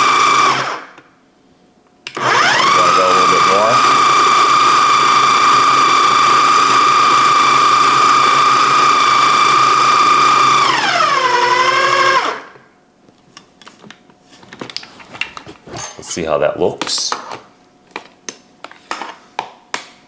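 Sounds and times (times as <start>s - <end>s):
food processor motor whine: 0.0s - 1.0s, 2.1s - 12.6s.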